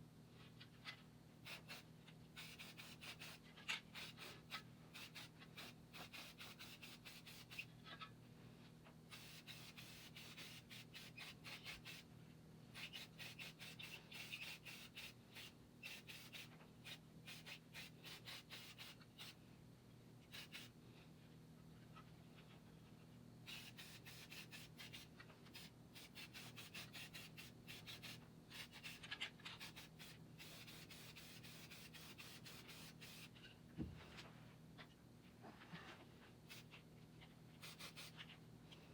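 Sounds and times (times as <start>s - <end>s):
faint steady hum: 0.0s - 38.9s
fast rubbing strokes: 9.2s - 12.1s, 12.8s - 19.4s, 23.5s - 33.4s.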